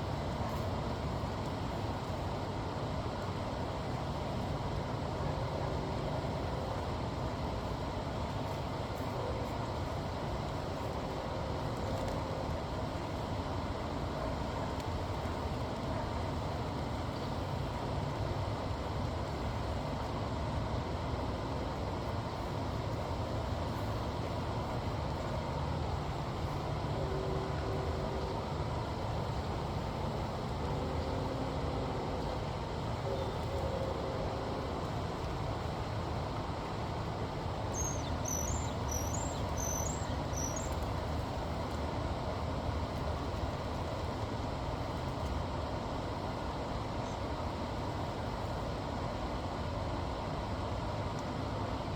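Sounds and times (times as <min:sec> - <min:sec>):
faint humming tones: 0:00.0 - 0:51.9
low outdoor rumble: 0:00.0 - 0:51.9
songbird high chirps: 0:37.7 - 0:40.8.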